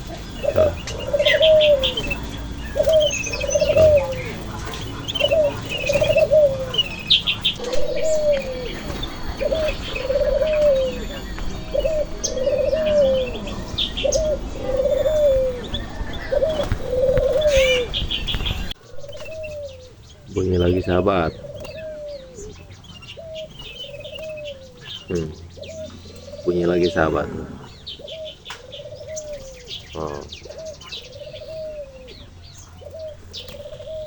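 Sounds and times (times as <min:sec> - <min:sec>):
bird cooing: 0:00.0 - 0:34.0
small birds chirping: 0:00.0 - 0:34.0.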